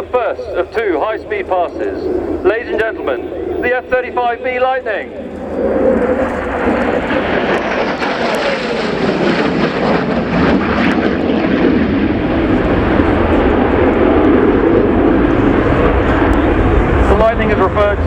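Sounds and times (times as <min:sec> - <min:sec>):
jet engine low pass: 0:00.0 - 0:18.0.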